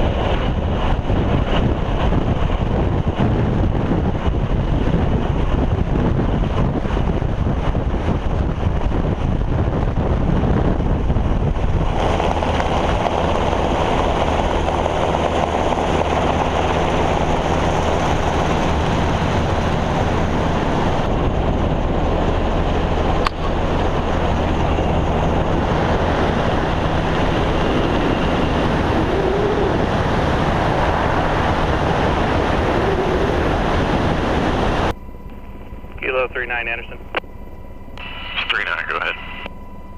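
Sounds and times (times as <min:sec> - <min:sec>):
wind buffeting microphone: 0:00.0 - 0:36.1
helicopter rotor and engine: 0:00.0 - 0:39.9.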